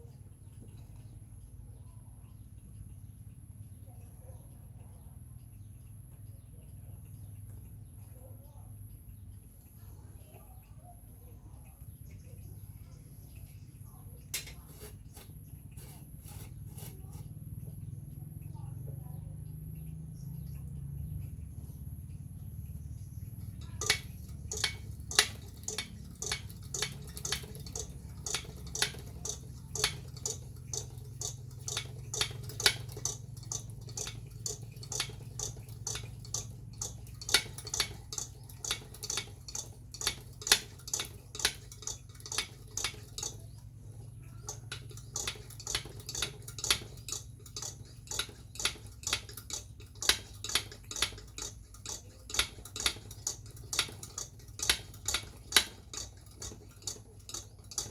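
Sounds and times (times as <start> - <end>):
steady low hum: 0.0 - 57.9
regular sharp clicks: 23.4 - 57.9.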